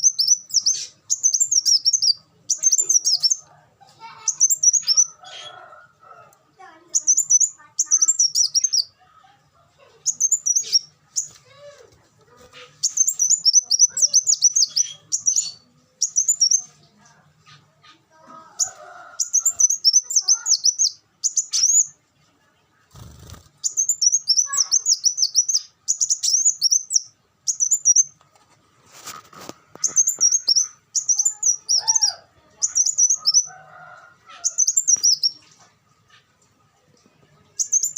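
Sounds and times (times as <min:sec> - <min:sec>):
bird twittering chirps: 0:00.0 - 0:03.5, 0:04.2 - 0:05.5, 0:06.9 - 0:08.9, 0:10.0 - 0:11.4, 0:12.8 - 0:16.7, 0:18.6 - 0:22.0, 0:23.0 - 0:28.2, 0:29.8 - 0:33.6, 0:34.4 - 0:35.4, 0:37.6 - 0:37.9.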